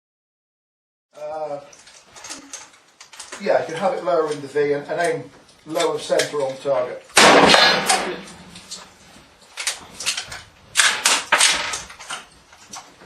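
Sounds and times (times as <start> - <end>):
rifle metallic clicking and rattling: 1.7 - 4.4, 9.4 - 13.0
gunshot bang: 7.2 - 8.5.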